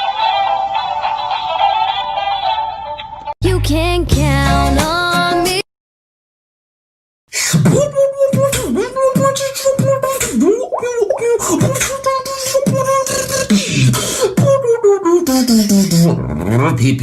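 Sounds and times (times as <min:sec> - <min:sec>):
beatboxing: 0:07.3 - 0:17.0.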